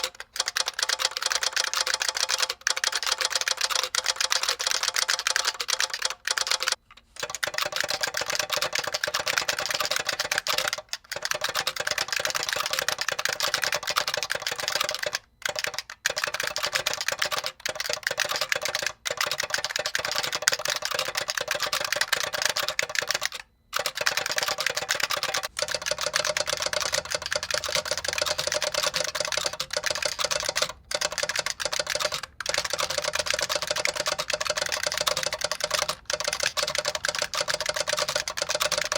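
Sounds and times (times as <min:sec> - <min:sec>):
fast keyboard typing clicks: 0:00.0 - 0:38.9.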